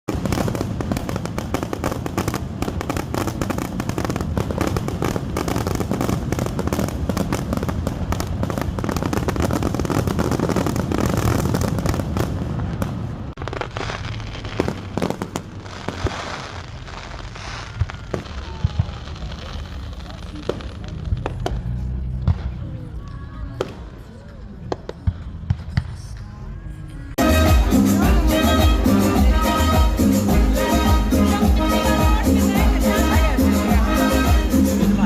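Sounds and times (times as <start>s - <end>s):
fireworks cracking and banging: 0.0s - 26.3s.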